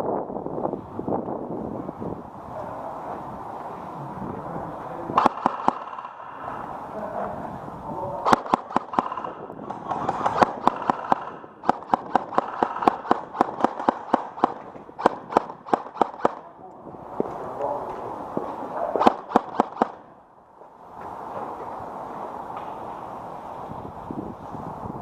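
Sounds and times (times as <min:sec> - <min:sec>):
airsoft gun shots: 0:05.2 - 0:06.6, 0:08.2 - 0:16.5, 0:19.0 - 0:20.1.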